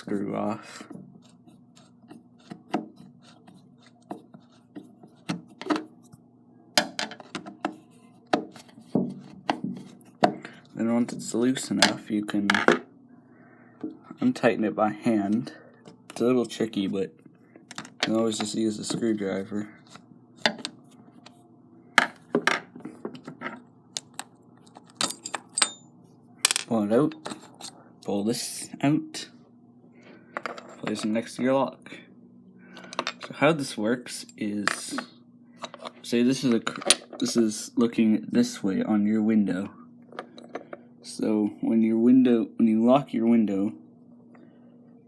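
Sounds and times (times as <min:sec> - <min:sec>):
small metal parts clicking: 0:24.0 - 0:25.8.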